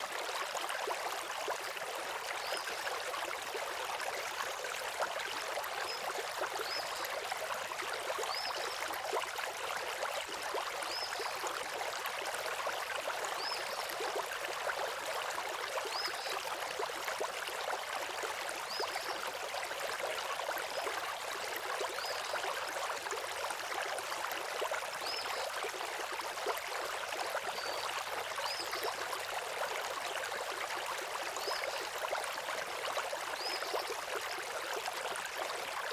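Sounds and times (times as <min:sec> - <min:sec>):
stream flowing: 0:00.0 - 0:35.9.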